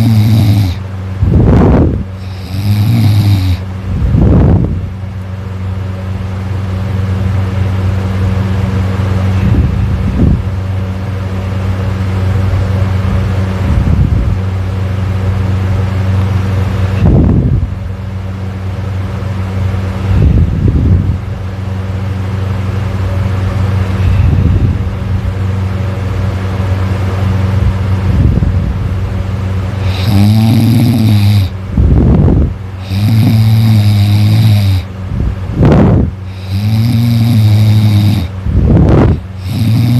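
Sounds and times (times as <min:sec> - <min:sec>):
man snoring: 0:00.0 - 0:00.8, 0:02.2 - 0:03.7, 0:29.8 - 0:31.6, 0:32.8 - 0:34.9, 0:35.7 - 0:39.9
steady low hum: 0:00.0 - 0:39.9.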